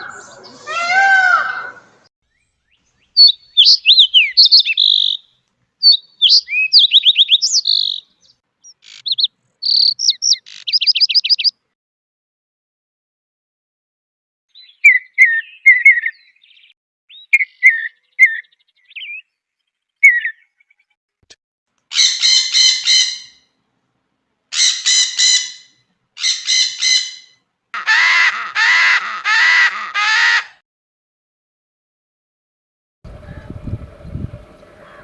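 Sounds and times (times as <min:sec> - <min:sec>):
bird harsh squawking calls: 0:02.7 - 0:11.5, 0:14.6 - 0:19.2, 0:21.9 - 0:23.4, 0:24.5 - 0:30.6, 0:33.1 - 0:35.0
bird whistled chirps: 0:03.1 - 0:05.2, 0:05.8 - 0:11.5, 0:14.6 - 0:19.2, 0:20.0 - 0:20.5.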